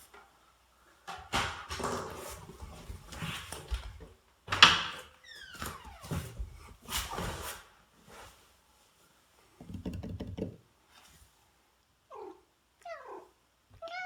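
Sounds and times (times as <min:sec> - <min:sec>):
cat meowing: 0:12.1 - 0:14.0.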